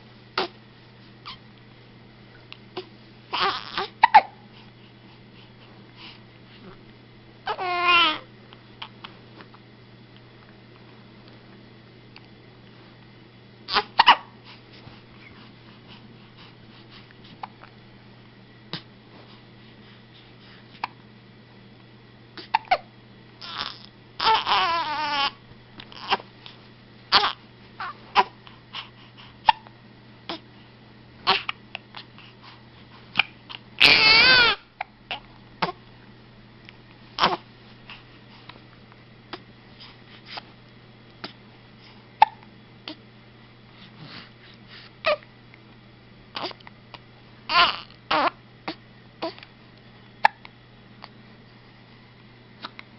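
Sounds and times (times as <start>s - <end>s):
person hiccuping: 4.0s - 4.4s, 42.2s - 42.4s.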